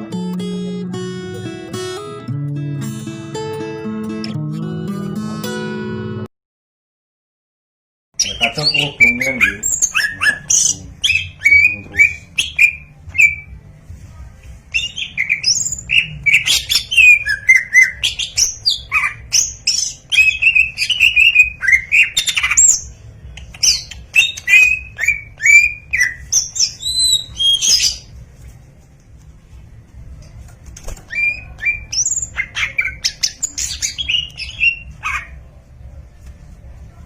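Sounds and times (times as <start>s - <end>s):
bird singing whistled chirping song: 8.2s - 13.5s, 14.7s - 22.9s, 23.6s - 28.1s, 31.1s - 35.3s.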